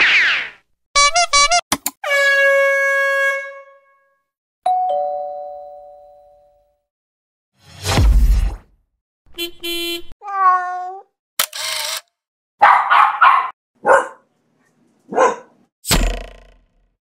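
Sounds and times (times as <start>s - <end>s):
dog barking: 12.6s - 14.3s, 15.1s - 15.6s.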